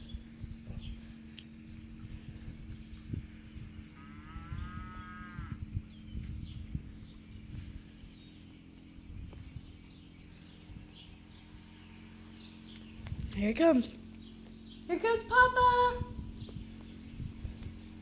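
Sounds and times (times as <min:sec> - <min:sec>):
high-pitched insect drone: 0:00.0 - 0:18.0
low wind rumble: 0:00.0 - 0:18.0
distant cow mooing: 0:03.8 - 0:05.7.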